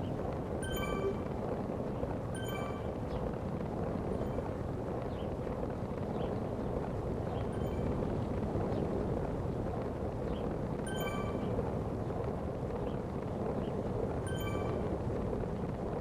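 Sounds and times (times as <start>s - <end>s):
rushing wind and road noise: 0.0s - 16.0s
faint high chirps: 0.6s - 1.3s, 10.9s - 11.6s, 14.3s - 15.0s.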